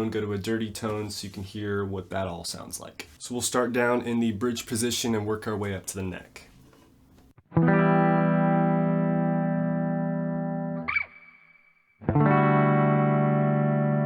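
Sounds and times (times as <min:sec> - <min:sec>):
electric guitar chord strummed: 0:07.6 - 0:11.1, 0:12.1 - 0:14.0.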